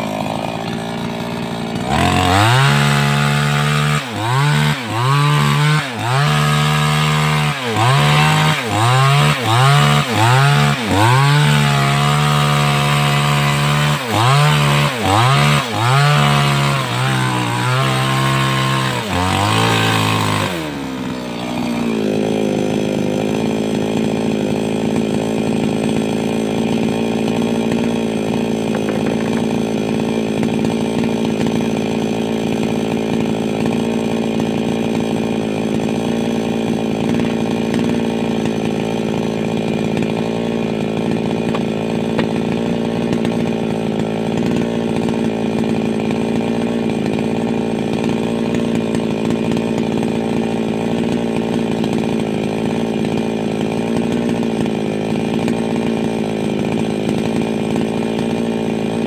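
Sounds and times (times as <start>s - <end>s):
chainsaw cutting wood: 0.0s - 59.0s.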